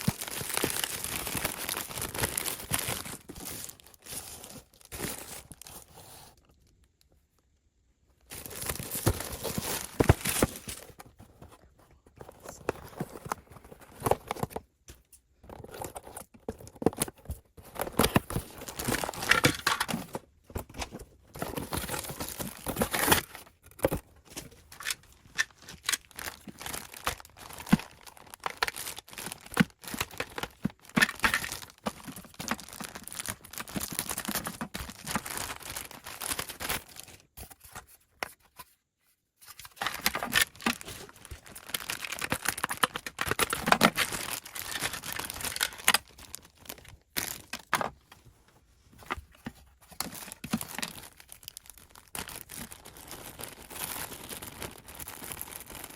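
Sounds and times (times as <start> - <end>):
packaging torn and rustled: 0.0 - 5.8, 8.3 - 11.2, 15.5 - 38.0, 39.5 - 47.8, 49.2 - 55.9.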